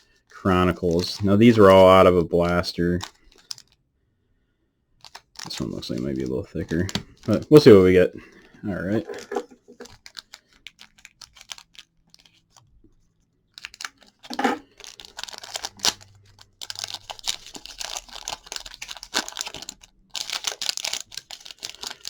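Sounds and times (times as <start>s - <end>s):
card pack wrapper tearing: 0.5s - 3.8s, 5.0s - 8.0s, 9.8s - 12.6s, 13.6s - 22.0s.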